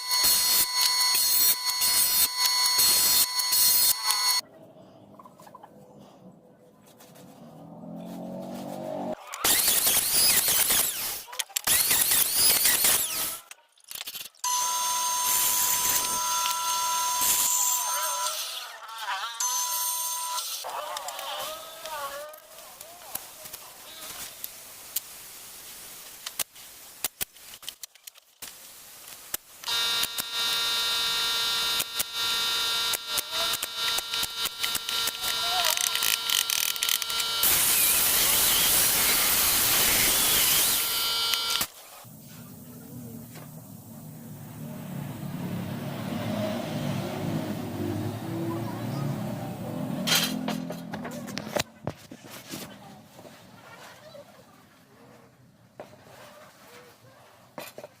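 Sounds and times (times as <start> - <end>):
power tool cutting wood: 9.3 - 13.4, 14.5 - 18.7, 29.7 - 41.7
scattered clicks: 32.8 - 37.6, 40.5 - 41.7.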